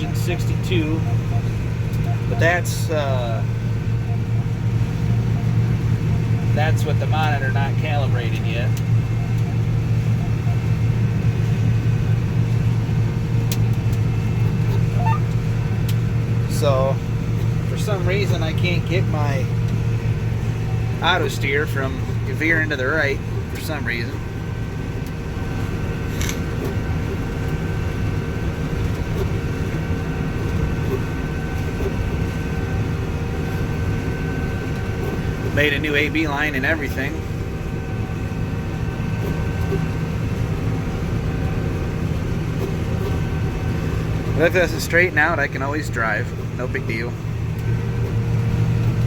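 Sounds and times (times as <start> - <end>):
steady high machine tone: 0.0 - 12.6, 14.1 - 24.6
combine harvester engine drone: 0.0 - 49.0
constant whining tones: 0.0 - 49.0.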